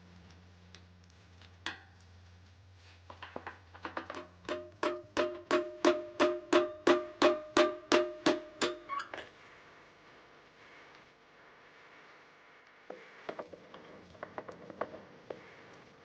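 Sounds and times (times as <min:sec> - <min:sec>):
hammer striking metal: 0:04.2 - 0:09.0.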